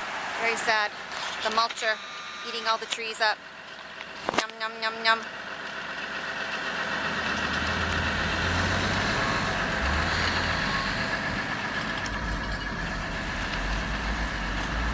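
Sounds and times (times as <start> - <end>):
diesel engine drone: 0.0 - 14.9
wood grinder shredding branches: 5.4 - 14.9.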